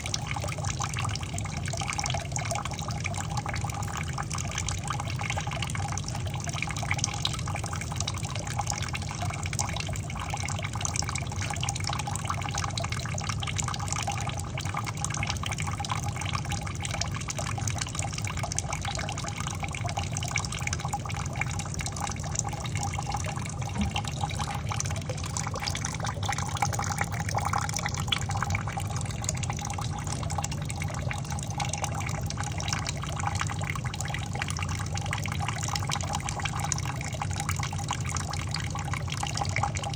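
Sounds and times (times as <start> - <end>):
water running and splashing: 23.1 - 27.3
steady low rumble: 23.2 - 26.2.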